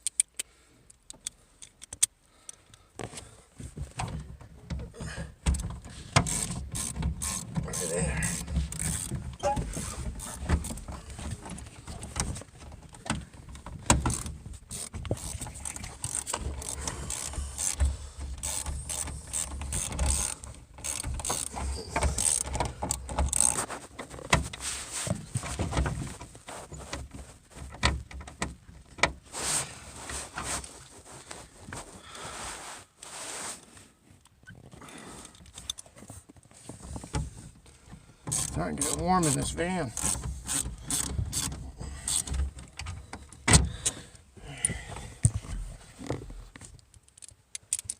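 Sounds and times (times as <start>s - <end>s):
hand tools clicking and rattling: 5.5s - 24.3s, 38.3s - 42.9s.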